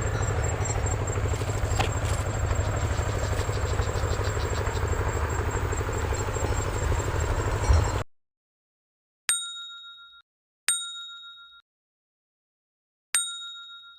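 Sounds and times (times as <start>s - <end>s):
pulsing low rumble: 0.0s - 8.0s
bright ding chimes: 9.3s - 11.6s, 13.2s - 13.9s.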